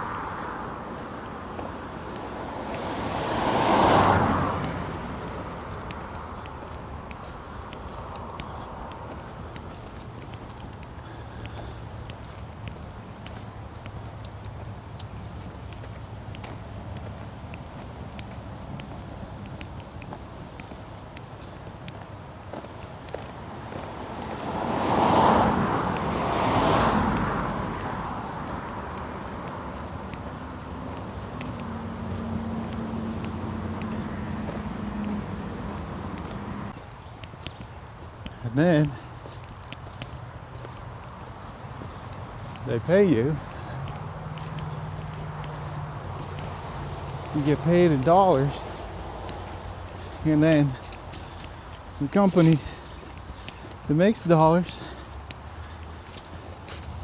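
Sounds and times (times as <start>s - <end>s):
car passing by: 0.0s - 11.8s, 23.3s - 36.8s, 40.7s - 57.0s.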